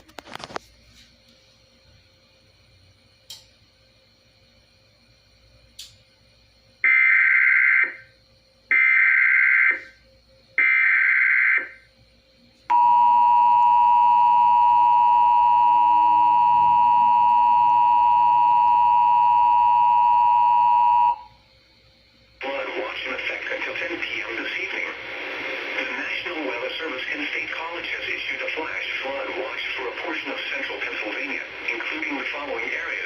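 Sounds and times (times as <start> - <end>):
two-tone attention signal: 12.7 - 21.3.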